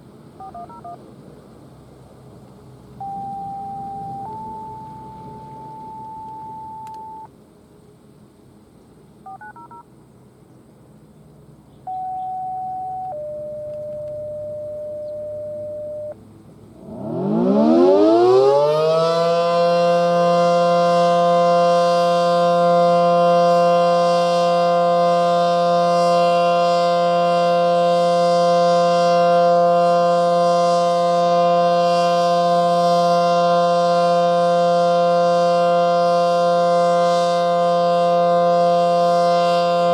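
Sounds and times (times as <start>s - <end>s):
tornado siren dissonant chord: 3.0s - 7.3s, 12.0s - 16.2s, 16.8s - 39.9s.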